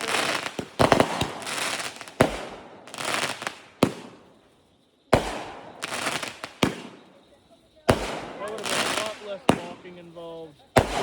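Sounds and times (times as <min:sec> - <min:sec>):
fireworks bangs: 0:00.0 - 0:11.0
fireworks crackling: 0:00.0 - 0:11.0.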